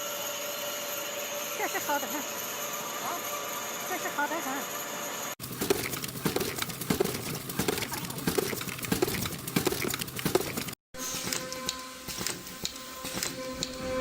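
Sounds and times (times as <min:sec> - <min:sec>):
mechanical hum: 0:00.0 - 0:14.0
scattered clicks: 0:05.4 - 0:13.8.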